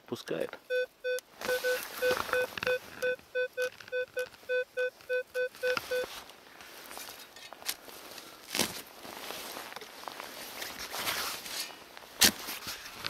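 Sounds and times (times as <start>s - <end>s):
metal detector beeps: 0.7s - 6.1s.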